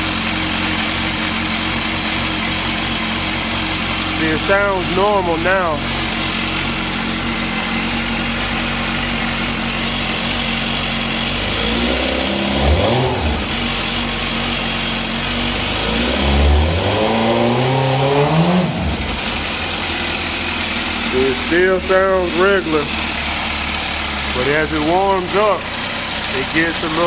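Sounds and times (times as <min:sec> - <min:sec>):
motorcycle engine idling and revving: 0:00.0 - 0:27.0.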